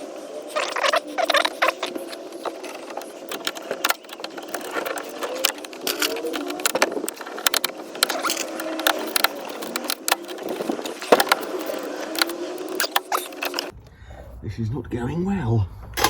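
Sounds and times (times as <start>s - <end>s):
plastic creaking and squeaking: 0.4s - 13.7s
plastic clicks and knocks: 2.5s - 13.7s.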